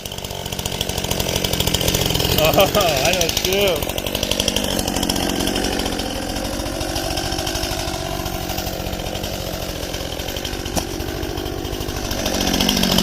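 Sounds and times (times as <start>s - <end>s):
chainsaw running: 0.0s - 13.0s.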